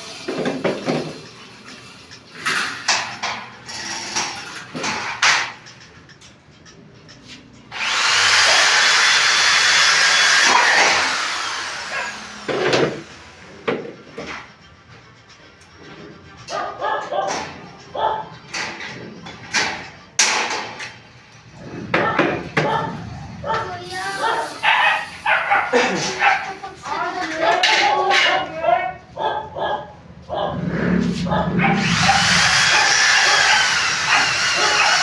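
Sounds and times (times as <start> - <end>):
knocks and clatter: 0.2 - 7.2, 12.4 - 23.0
power tool running: 7.7 - 13.8, 31.5 - 35.0.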